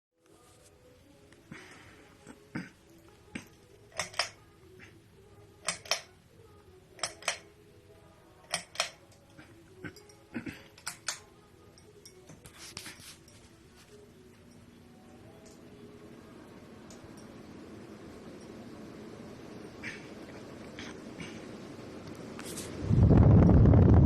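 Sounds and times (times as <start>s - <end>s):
ceiling fan humming: 0.3s - 24.0s
sharp clicks: 5.6s - 6.1s, 7.0s - 7.5s, 8.5s - 9.2s.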